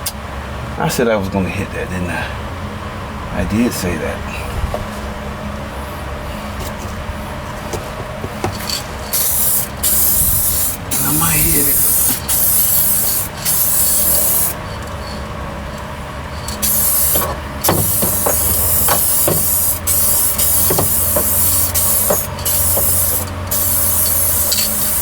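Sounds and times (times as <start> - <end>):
low steady hum: 0.0 - 25.0
spray paint hissing: 8.5 - 15.8, 16.4 - 25.0.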